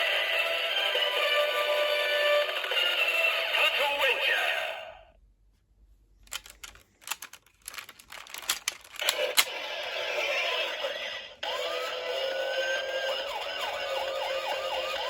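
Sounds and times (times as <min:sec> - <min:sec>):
plastic toy clicks and knocks: 0:06.2 - 0:09.5
toy siren sound effect: 0:11.4 - 0:15.0.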